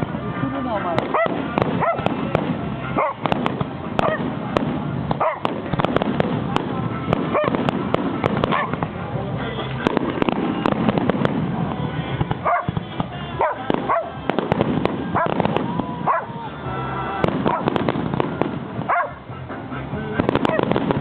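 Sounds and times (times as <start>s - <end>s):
fireworks crackling and popping: 0.0s - 21.0s
dog yelping: 1.1s - 2.0s, 4.0s - 4.2s, 12.5s - 12.7s, 16.1s - 16.3s, 18.9s - 19.2s.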